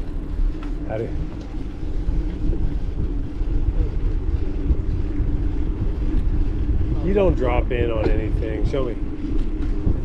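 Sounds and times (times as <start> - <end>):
faint even hum: 0.0 - 10.0
wind buffeting microphone: 0.0 - 10.0.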